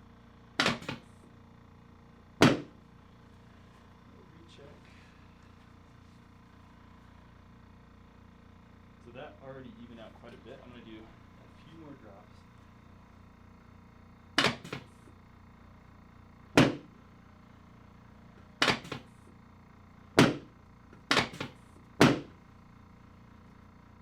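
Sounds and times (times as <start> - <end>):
drop table knocks: 0.6 - 1.0, 2.4 - 2.8, 14.4 - 14.9, 16.6 - 16.9, 18.6 - 19.1, 20.2 - 20.5, 21.1 - 22.4.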